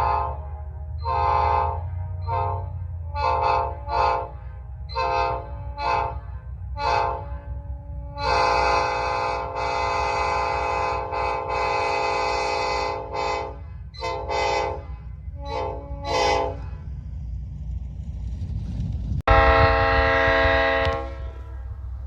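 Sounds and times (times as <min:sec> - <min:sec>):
train air horn chord: 0:00.0 - 0:17.1, 0:19.3 - 0:21.9.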